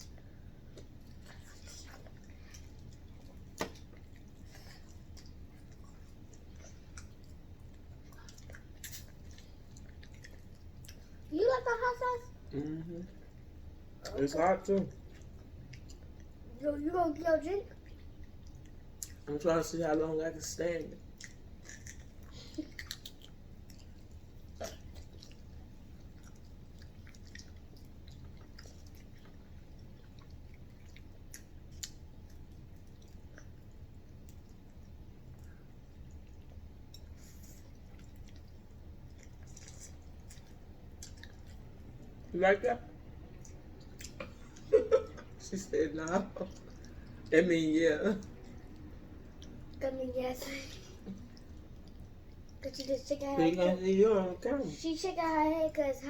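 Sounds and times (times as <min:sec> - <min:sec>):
chewing and mouth smacks: 0:00.0 - 0:11.3, 0:11.9 - 0:16.5, 0:17.6 - 0:19.3, 0:20.9 - 0:42.3, 0:42.9 - 0:47.5, 0:48.1 - 0:49.9, 0:50.7 - 0:53.2
steady low hum: 0:00.0 - 0:56.0.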